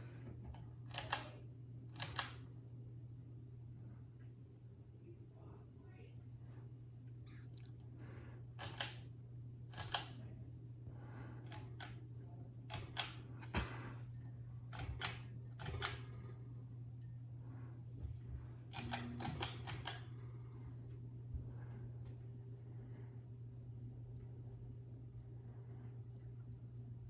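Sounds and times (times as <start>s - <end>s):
ceiling fan humming: 0.0s - 27.0s
sharp mechanical clicks: 0.9s - 1.3s, 2.0s - 2.4s, 8.6s - 9.0s, 9.7s - 10.1s, 12.7s - 13.2s, 14.7s - 16.1s, 18.7s - 20.0s.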